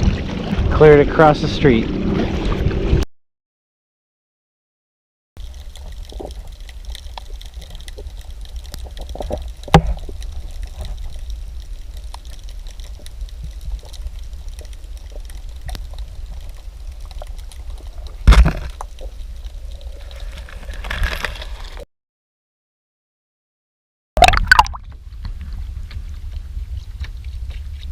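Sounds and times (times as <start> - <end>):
low rumble: 0.0 - 3.0
water sloshing and trickling: 0.0 - 3.0, 24.2 - 27.9.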